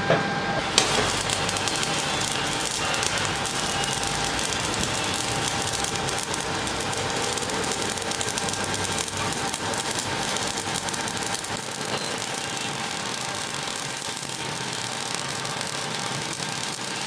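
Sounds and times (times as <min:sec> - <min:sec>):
arc welding crackling hiss: 0:00.6 - 0:17.0.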